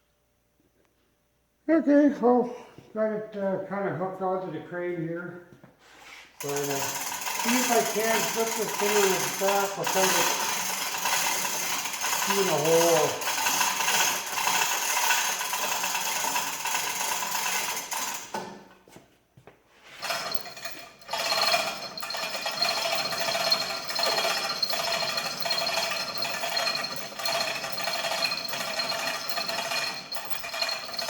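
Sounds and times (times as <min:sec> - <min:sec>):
crane hoist clicking rattle: 0:06.4 - 0:18.6, 0:20.0 - 0:31.0.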